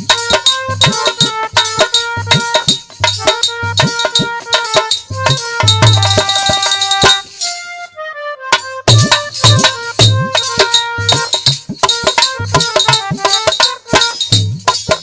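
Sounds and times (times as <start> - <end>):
hand drums and percussion: 0.0 - 7.7, 8.5 - 15.0
folk music melody: 0.0 - 14.3.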